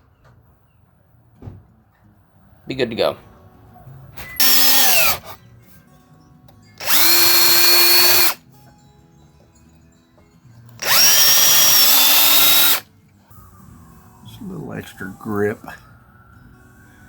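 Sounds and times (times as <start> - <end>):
power drill whining: 4.4 - 5.4, 6.8 - 8.4, 10.8 - 12.8.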